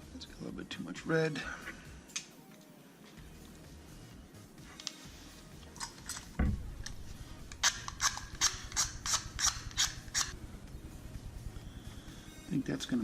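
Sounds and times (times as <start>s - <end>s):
wax sticks clicking: 5.6s - 10.4s.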